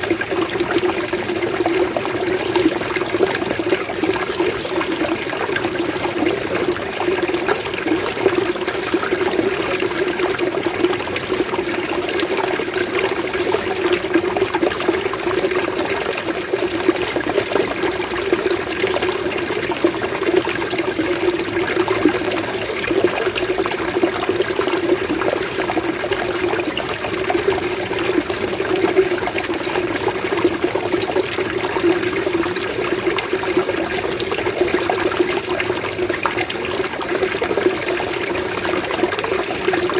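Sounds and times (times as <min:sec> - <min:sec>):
running water gurgling: 0:00.0 - 0:39.9.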